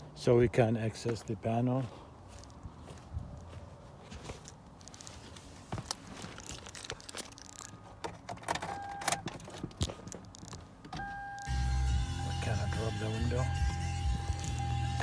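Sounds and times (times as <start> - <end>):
short electronic beep: 11.0 - 14.6.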